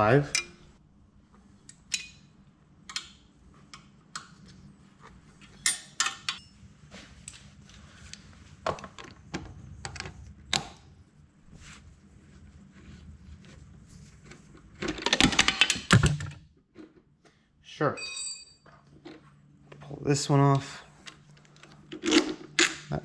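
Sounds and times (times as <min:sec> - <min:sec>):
hand tools clinking on metal: 0:18.0 - 0:18.7.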